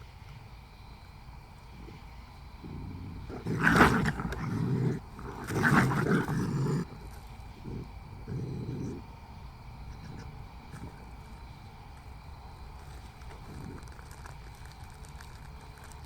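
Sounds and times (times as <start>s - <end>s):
deep rough growling: 1.7s - 9.2s.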